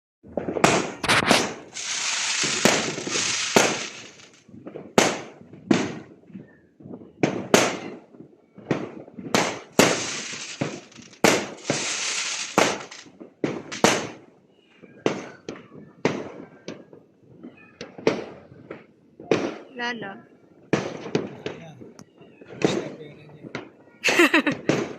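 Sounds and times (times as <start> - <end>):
firework bangs: 0.2 - 6.2, 7.2 - 8.0, 8.6 - 14.3, 20.7 - 21.9, 23.6 - 24.9
firework crackling: 0.3 - 6.1, 9.3 - 14.2, 24.0 - 24.9.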